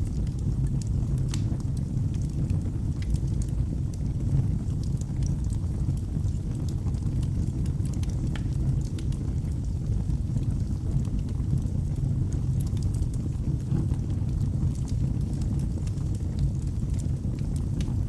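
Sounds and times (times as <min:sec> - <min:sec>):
burning logs crackling and popping: 0:00.0 - 0:18.0
low rumble of flames: 0:00.0 - 0:18.0.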